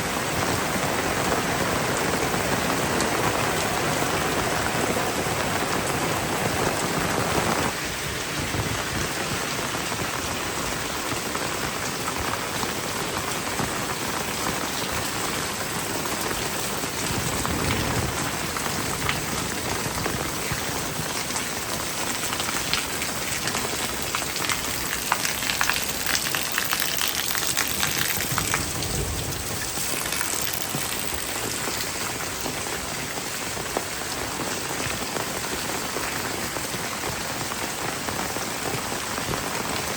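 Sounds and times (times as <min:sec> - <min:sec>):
heavy rain falling: 0:00.0 - 0:39.9
raindrops ticking close by: 0:07.7 - 0:39.9
deep rushing noise: 0:27.7 - 0:30.6.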